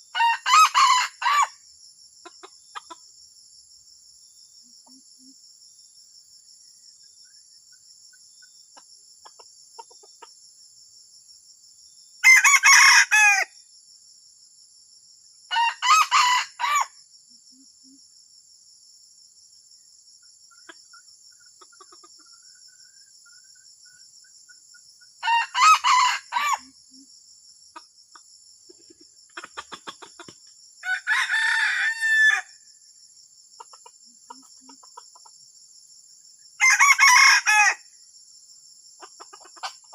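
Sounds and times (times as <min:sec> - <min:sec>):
insects buzzing: 0:00.0 - 0:39.9
junglefowl crowing: 0:00.1 - 0:01.6, 0:12.2 - 0:13.5, 0:15.5 - 0:16.9, 0:25.2 - 0:26.8, 0:29.4 - 0:32.6, 0:36.6 - 0:37.8.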